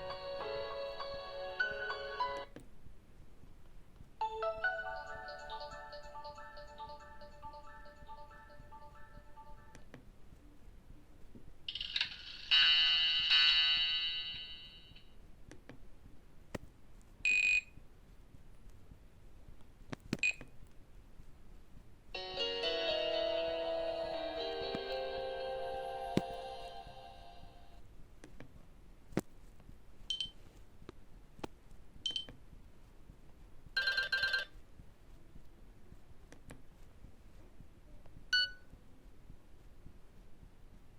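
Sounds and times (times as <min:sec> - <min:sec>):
phone ringtone chime notes: 0:04.2 - 0:09.8, 0:22.2 - 0:27.2
phone ringtone beeps: 0:04.3 - 0:09.8, 0:33.8 - 0:34.5.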